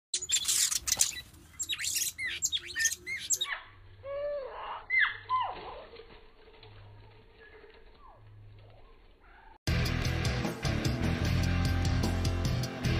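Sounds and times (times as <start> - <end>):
bird calls sweeping down: 0.2 - 3.6
descending bird whistles: 0.2 - 5.5.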